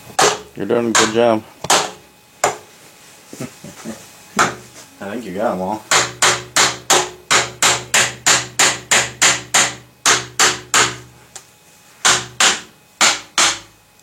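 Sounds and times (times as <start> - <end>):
hammer striking pipe: 0.2 - 2.6, 5.9 - 11.1, 12.0 - 13.7.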